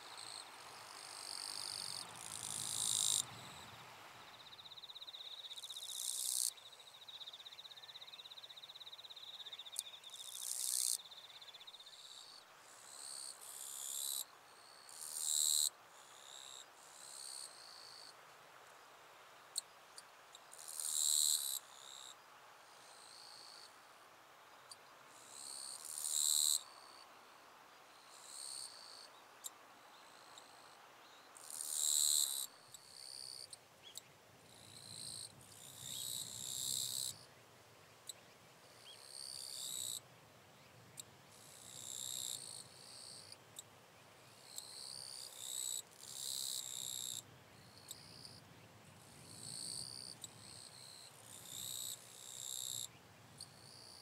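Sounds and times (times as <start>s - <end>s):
katydid rasping buzzes: 1.1s - 3.2s.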